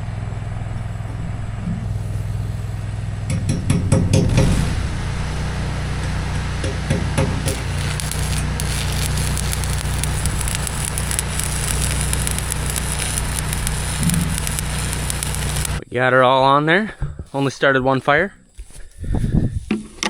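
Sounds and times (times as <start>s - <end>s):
low engine hum: 0.0s - 15.8s
welding arc crackling: 7.2s - 15.8s.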